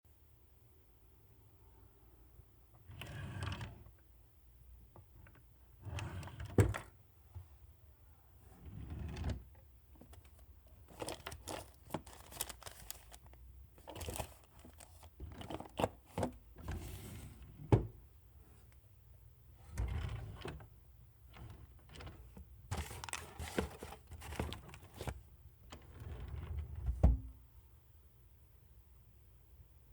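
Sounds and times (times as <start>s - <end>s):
drawers sliding open and shut: 2.8s - 3.9s, 5.0s - 7.0s, 8.4s - 13.2s, 13.8s - 18.0s, 19.6s - 27.4s
drawer knocking against stop: 17.6s - 18.0s.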